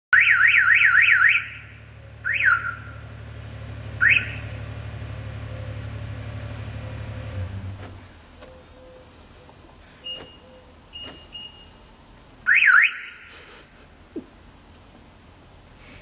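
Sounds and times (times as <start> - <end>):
car alarm siren chirping: 0.1 - 3.0, 4.0 - 4.6, 12.4 - 13.3
vehicle engine idling: 0.2 - 16.0.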